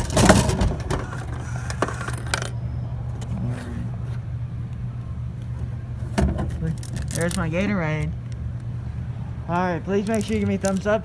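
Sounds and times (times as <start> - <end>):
metallic rattles and clicks: 0.0 - 2.6, 6.1 - 8.7, 9.9 - 11.0
vending machine clunk: 0.0 - 3.7, 5.5 - 8.2
steady low hum: 0.0 - 11.0.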